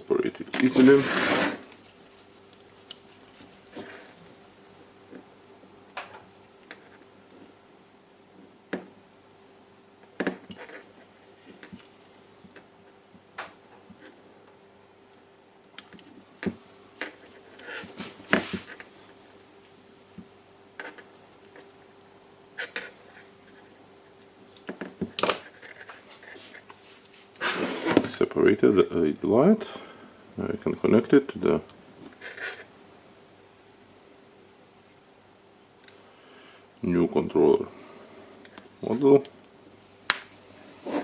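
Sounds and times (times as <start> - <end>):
faint steady hum: 0.0 - 41.0
small clicks and scrapes: 10.5 - 11.9, 20.8 - 21.7, 22.6 - 28.0.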